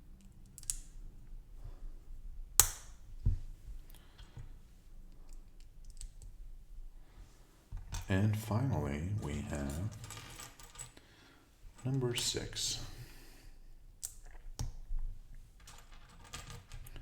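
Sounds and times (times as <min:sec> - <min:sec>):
plastic bricks snapping together: 0:02.6 - 0:03.4.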